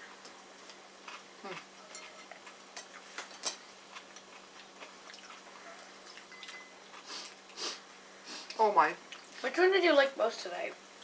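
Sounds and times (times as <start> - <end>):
chewing: 0.1 - 7.6.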